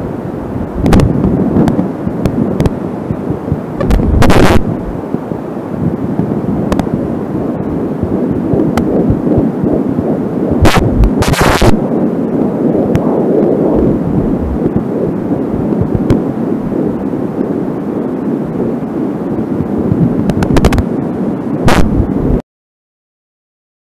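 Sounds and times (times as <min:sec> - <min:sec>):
static crackles: 0:00.0 - 0:22.4
doppler noise rush: 0:03.6 - 0:05.2, 0:10.4 - 0:17.1, 0:19.8 - 0:22.4
fetal heartbeat whooshing pulse: 0:08.0 - 0:09.8, 0:12.7 - 0:17.0, 0:19.6 - 0:20.8.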